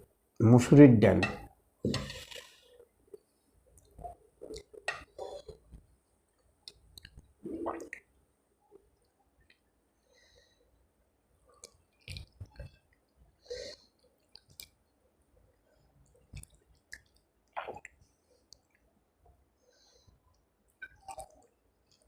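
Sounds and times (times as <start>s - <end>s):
chewing with wet squishes: 6.4s - 7.3s, 11.5s - 13.1s, 14.0s - 14.9s, 15.5s - 18.9s, 20.7s - 22.0s.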